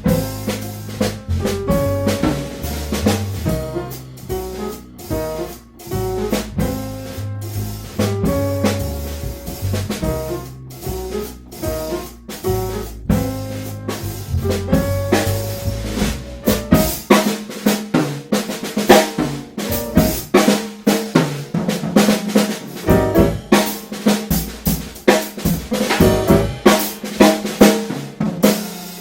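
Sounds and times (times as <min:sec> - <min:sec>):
low bass line: 0:00.0 - 0:16.8, 0:25.9 - 0:26.7
jazz drum kit: 0:00.0 - 0:29.0
piano chords: 0:00.0 - 0:29.0.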